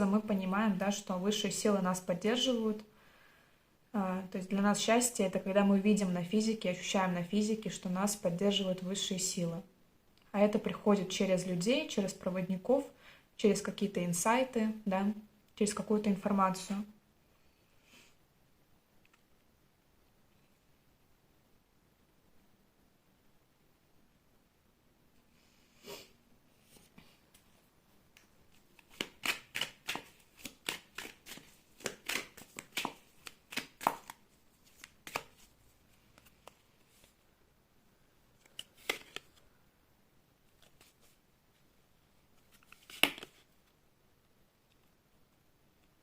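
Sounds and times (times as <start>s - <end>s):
cards being shuffled: 28.5s - 37.2s, 38.4s - 39.4s, 40.5s - 41.2s, 42.4s - 43.5s.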